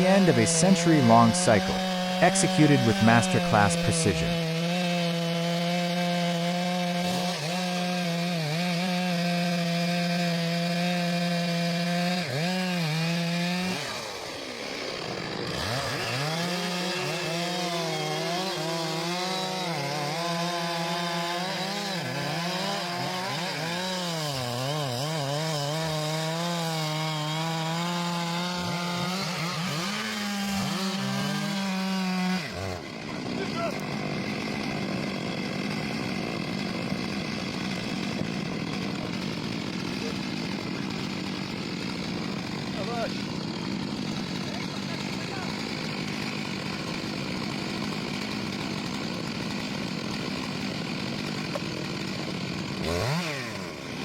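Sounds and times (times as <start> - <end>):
chainsaw cutting wood: 0.0 - 54.0.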